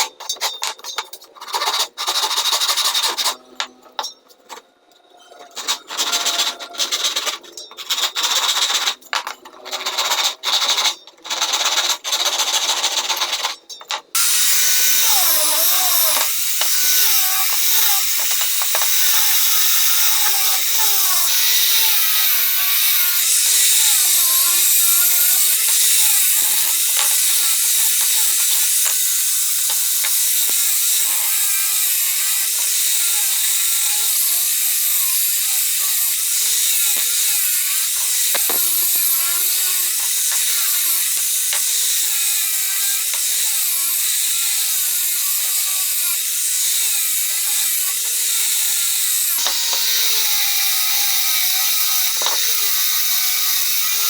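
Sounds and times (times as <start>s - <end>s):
hand tool rubbing across wood: 5.5s - 9.1s, 14.2s - 32.7s.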